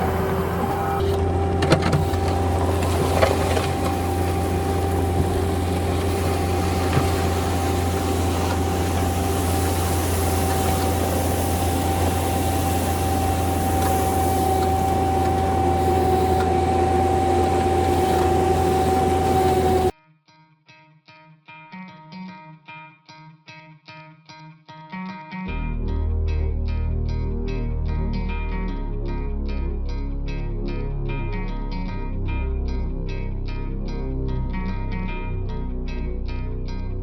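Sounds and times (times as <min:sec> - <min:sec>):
diesel engine with high whine: 0:00.0 - 0:19.9
faint guitar music: 0:00.0 - 0:37.0.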